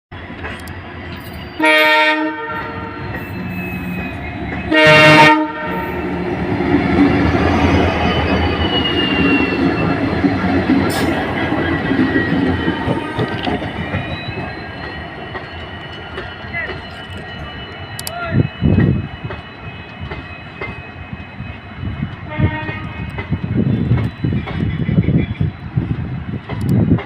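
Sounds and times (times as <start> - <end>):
train wheels on rails: 0.2 - 27.0
locomotive horn blasts: 1.6 - 3.0, 4.7 - 6.0, 22.3 - 23.1.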